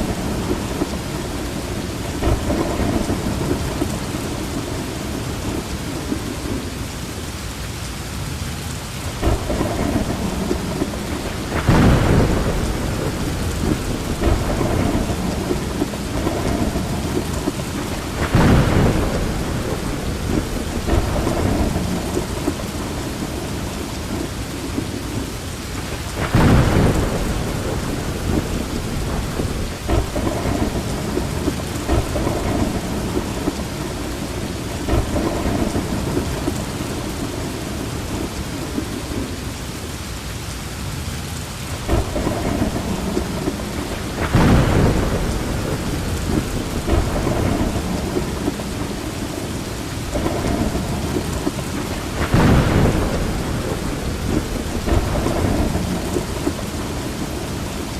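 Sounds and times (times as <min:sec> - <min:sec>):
thunderclaps rumbling: 0:00.0 - 0:07.4, 0:08.4 - 0:40.0, 0:41.1 - 0:57.9
steady rain falling: 0:00.0 - 0:57.9.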